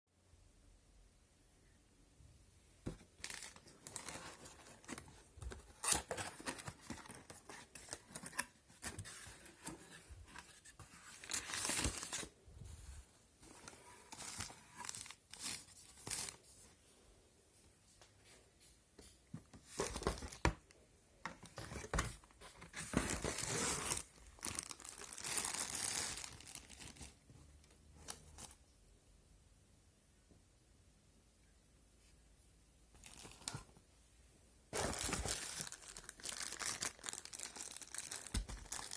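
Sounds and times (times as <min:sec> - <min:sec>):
packaging tearing and crinkling: 0:23.0 - 0:27.0, 0:34.8 - 0:38.9.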